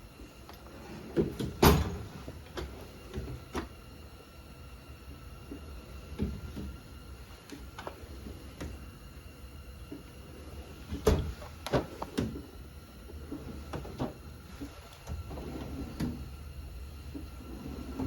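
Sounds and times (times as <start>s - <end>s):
metal drawers sliding: 0.8s - 3.3s, 13.2s - 16.3s
drawers and tools clunking: 0.8s - 3.7s, 10.7s - 12.5s, 13.2s - 16.3s.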